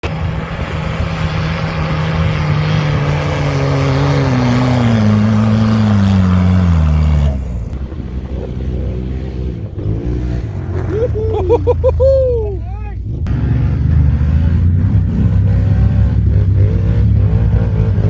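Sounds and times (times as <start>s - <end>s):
vehicle engine running loudly: 0.0s - 18.0s.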